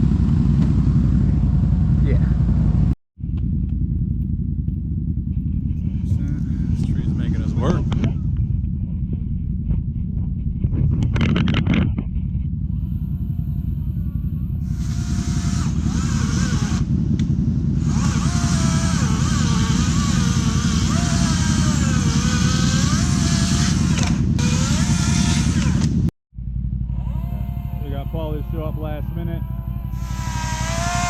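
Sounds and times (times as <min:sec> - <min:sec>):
steady low rumble: 0:00.0 - 0:31.0
chainsaw cutting through wood: 0:12.7 - 0:26.1, 0:26.9 - 0:31.0.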